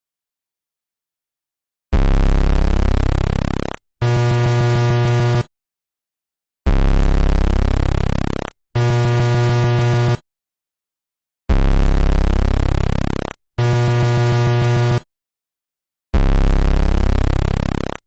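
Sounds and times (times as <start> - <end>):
harsh buzzing alarm tone: 2.0 - 5.5, 6.7 - 10.2, 11.5 - 15.1, 16.2 - 18.0
steady buzzing tone: 2.0 - 5.5, 6.7 - 10.2, 11.5 - 15.1, 16.2 - 18.0.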